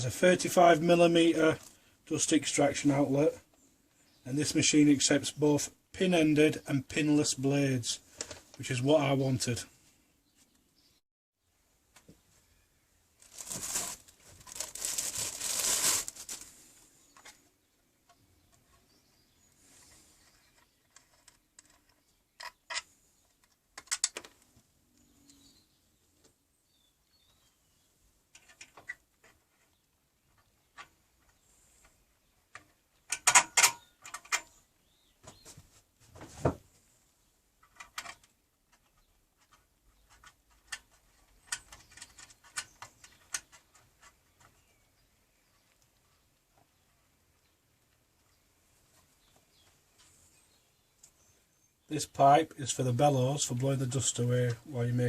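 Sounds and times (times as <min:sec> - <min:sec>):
packaging rustling: 0:13.2 - 0:16.7
parts clicking and knocking: 0:19.9 - 0:24.7, 0:28.3 - 0:34.6, 0:37.6 - 0:44.7.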